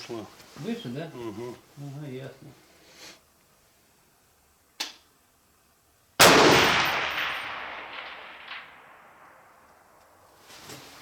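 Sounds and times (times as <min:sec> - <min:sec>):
rifle shot echoing: 0:06.2 - 0:10.0.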